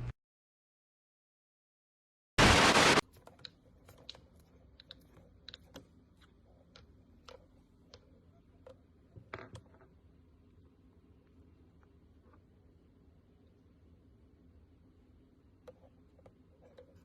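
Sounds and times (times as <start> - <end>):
loud burst of noise: 2.4 - 3.0
faint irregular clicks and taps: 3.1 - 10.0, 15.5 - 17.0.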